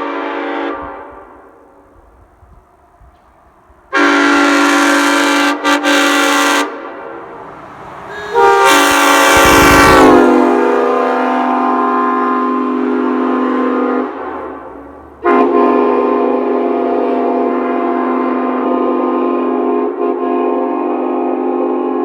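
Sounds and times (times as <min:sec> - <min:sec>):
air horn chord blasts: 0:04.0 - 0:14.2
low rush of air: 0:07.1 - 0:11.2.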